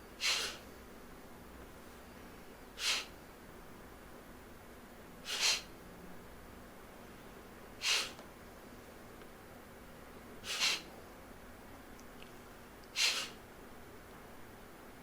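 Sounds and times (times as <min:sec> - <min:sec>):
sharp exhalations through nose: 0:00.2 - 0:00.7, 0:02.8 - 0:03.2, 0:05.2 - 0:05.7, 0:07.8 - 0:08.2, 0:10.4 - 0:10.9, 0:12.9 - 0:13.4.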